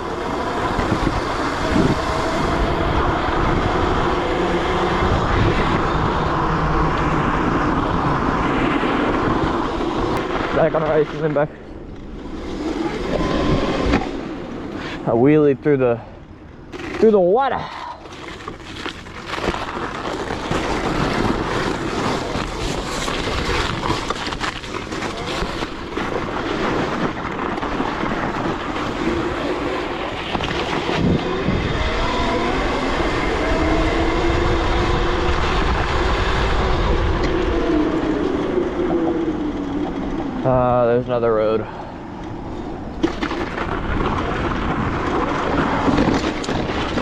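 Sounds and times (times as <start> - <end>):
electric motor whine: 0.0 - 11.3, 12.0 - 14.8, 28.5 - 40.6
tyres crunching on ice and snow: 16.7 - 39.3.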